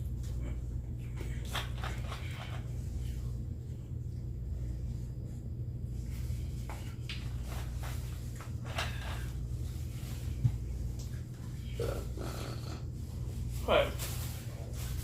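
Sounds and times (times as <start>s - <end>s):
steady low hum: 0.0s - 15.0s
clicks and rustles of handling food: 1.0s - 2.9s.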